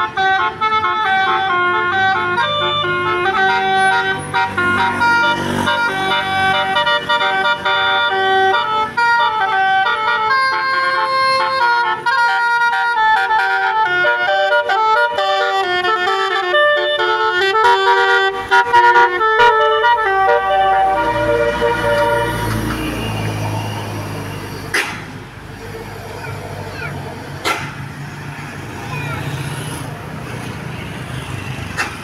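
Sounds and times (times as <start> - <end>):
multi-tone bus horn melody: 0.0 - 25.4.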